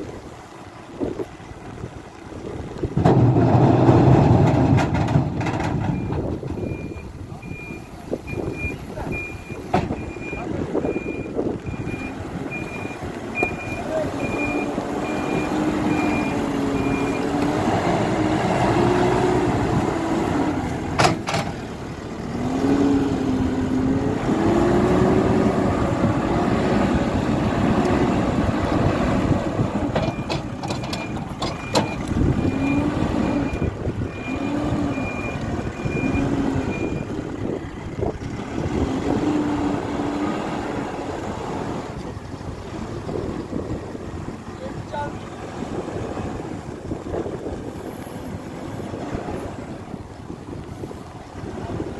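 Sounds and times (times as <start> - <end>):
diesel engine revving: 0.0 - 51.9
reversing alarm beeping: 5.9 - 17.3, 30.0 - 37.1.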